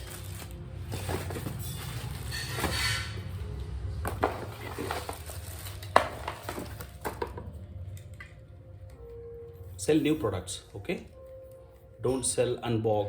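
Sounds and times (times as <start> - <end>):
packaging rustle: 0.0 - 2.7, 4.2 - 7.2.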